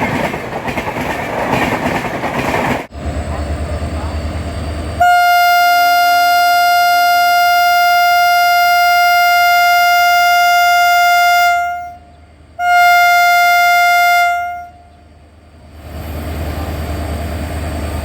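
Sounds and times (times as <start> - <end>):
locomotive air horn blasts: 5.0 - 14.9.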